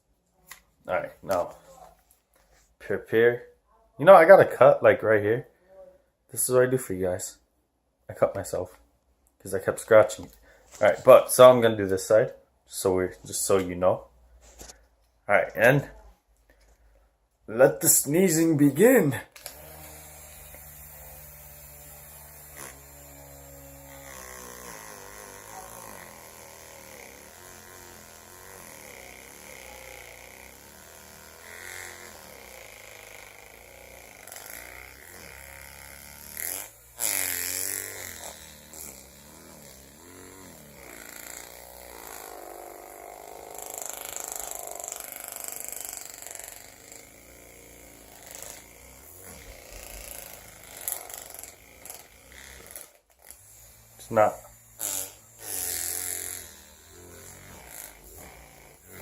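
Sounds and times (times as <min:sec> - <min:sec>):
handheld fan motor buzzing: 0:18.2 - 0:59.0.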